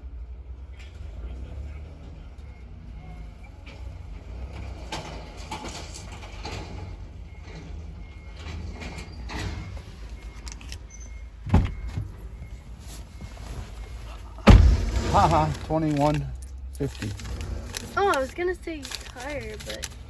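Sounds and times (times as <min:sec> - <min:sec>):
vehicle rumble: 0:00.0 - 0:20.0
loud thump: 0:11.4 - 0:12.2, 0:14.4 - 0:15.8.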